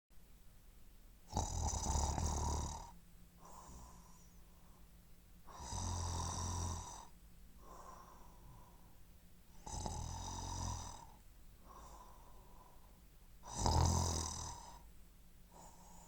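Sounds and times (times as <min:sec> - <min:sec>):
person snoring: 0:01.3 - 0:04.3, 0:05.5 - 0:08.4, 0:09.6 - 0:12.2, 0:13.4 - 0:14.9.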